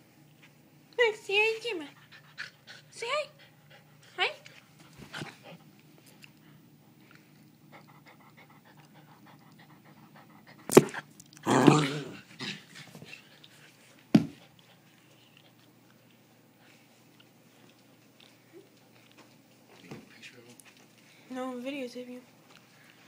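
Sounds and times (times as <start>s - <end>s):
dog panting: 1.7s - 10.9s, 12.2s - 19.4s.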